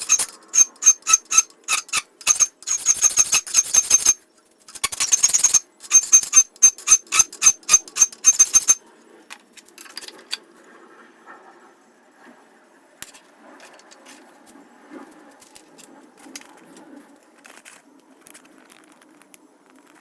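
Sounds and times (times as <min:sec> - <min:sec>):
file stroking steel: 0:00.0 - 0:08.8.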